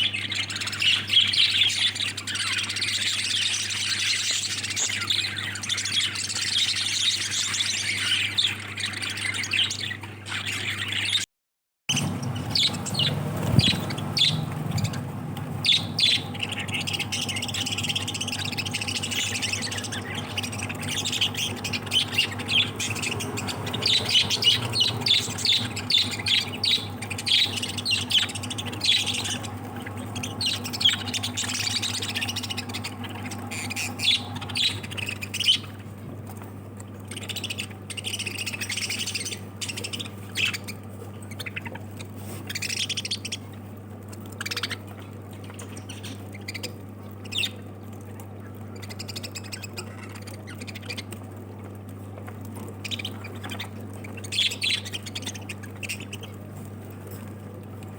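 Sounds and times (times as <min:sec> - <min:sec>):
lovebirds chattering and squawking: 0:00.0 - 0:11.3, 0:11.9 - 0:57.9
steady low hum: 0:11.9 - 0:57.9.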